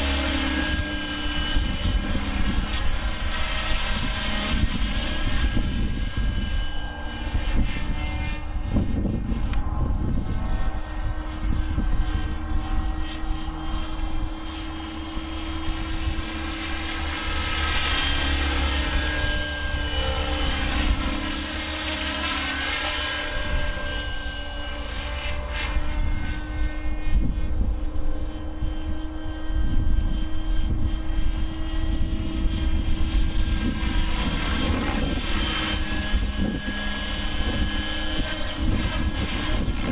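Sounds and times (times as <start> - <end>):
model helicopter rotor whine: 0.0 - 39.9
wind rumble on microphone: 0.0 - 39.9.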